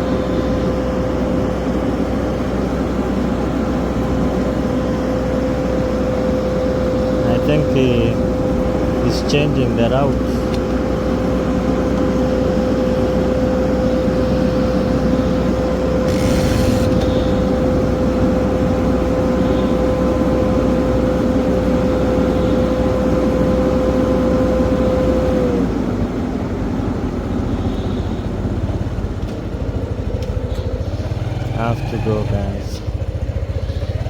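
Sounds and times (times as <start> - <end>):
engine running: 0.0 - 34.0
high steady whine: 3.2 - 23.8.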